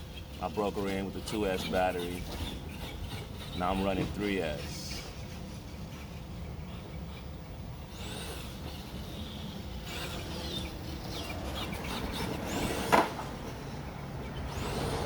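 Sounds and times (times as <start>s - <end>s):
electric motor whine revving: 0.0s - 15.0s
tyres rumbling on pavement: 7.8s - 15.0s.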